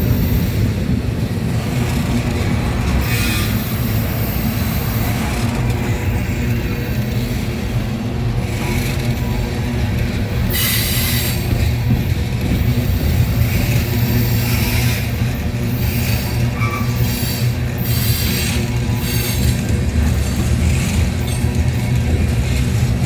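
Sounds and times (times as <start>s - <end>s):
freight train rumbling on rails: 0.0s - 23.0s
wheel-on-rail hiss: 10.5s - 11.6s.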